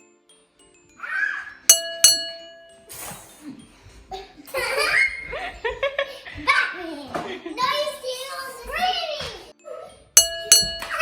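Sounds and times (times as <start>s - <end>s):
children laughing and squealing: 1.0s - 1.7s, 4.1s - 10.0s
bright ringing clinks: 1.7s - 3.2s, 10.2s - 11.0s.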